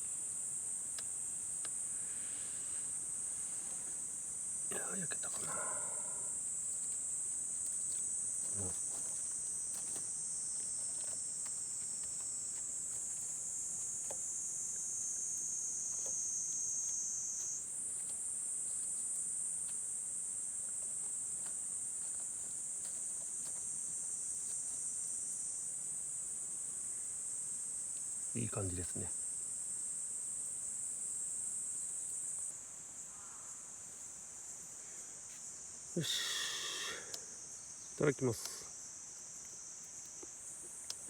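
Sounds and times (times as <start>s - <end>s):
insects singing: 0.0s - 41.0s
faint ticks: 0.9s - 1.8s, 15.8s - 19.9s, 36.9s - 37.3s, 38.3s - 38.7s, 39.4s - 41.0s.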